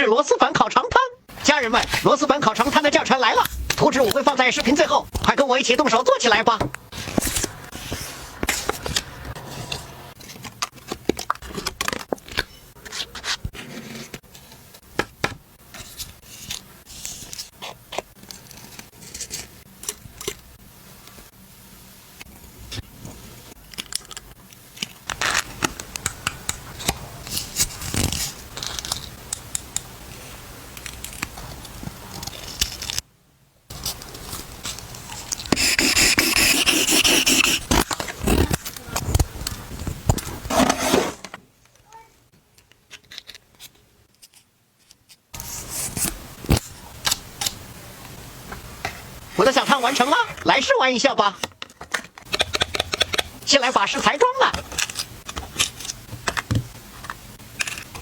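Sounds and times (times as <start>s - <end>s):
paper cutting and rustling: 6.4s - 14.5s, 24.8s - 29.2s, 33.7s - 41.4s, 54.4s - 58.0s
paper rasping: 35.5s - 38.6s.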